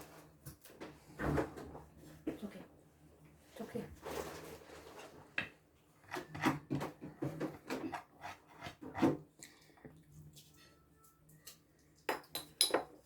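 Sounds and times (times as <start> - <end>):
tableware knocking and scraping: 12.1 - 13.0.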